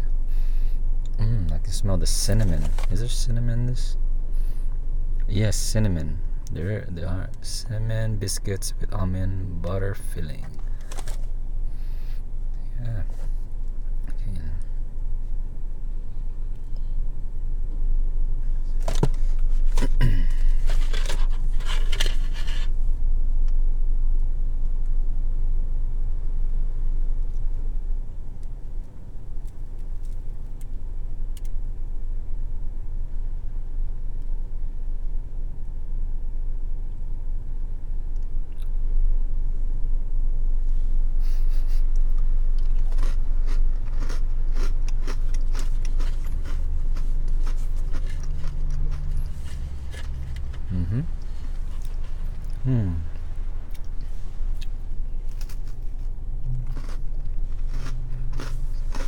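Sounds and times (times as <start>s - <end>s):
steady low rumble: 0.0s - 59.0s.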